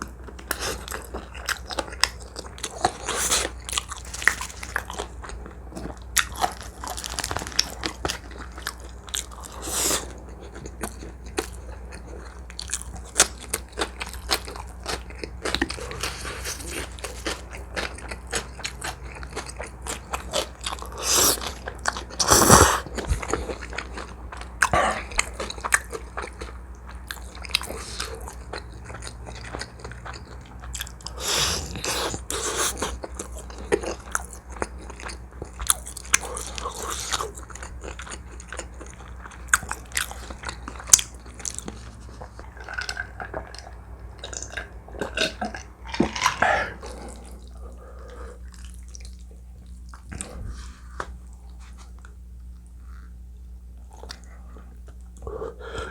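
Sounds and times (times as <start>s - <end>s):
person chewing and biting: 0.3s - 53.2s
slurping: 20.8s - 23.6s.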